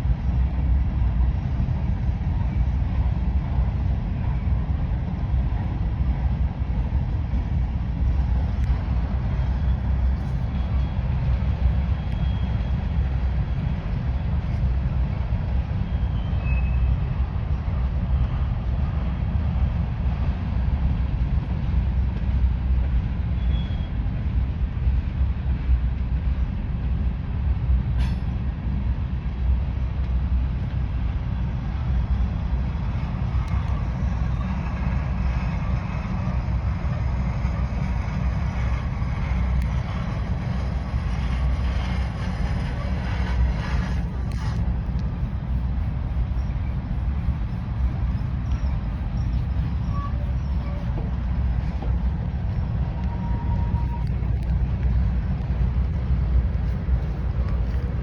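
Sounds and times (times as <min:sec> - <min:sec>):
freight train rumbling past: 0:00.0 - 0:58.0
faint squeals: 0:48.0 - 0:52.1.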